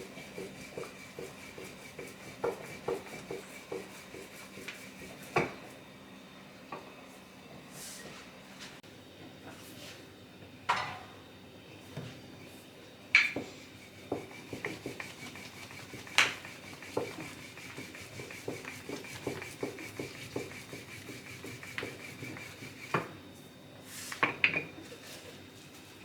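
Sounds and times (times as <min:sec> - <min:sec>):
utensils knocking and rubbing: 0:00.0 - 0:05.7, 0:13.2 - 0:23.1.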